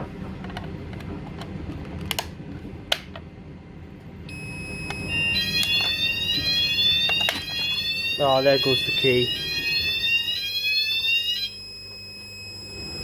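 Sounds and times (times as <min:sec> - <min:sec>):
fire alarm tones: 0:04.3 - 0:13.0.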